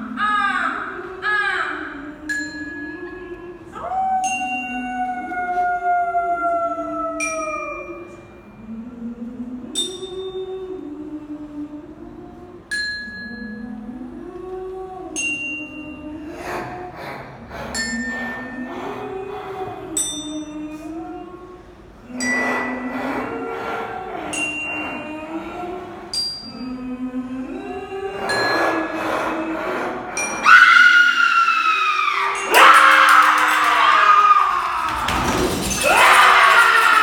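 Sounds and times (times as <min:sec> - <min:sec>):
long falling wail: 0:30.4 - 0:37.0
rattling noise: 0:34.7 - 0:37.0.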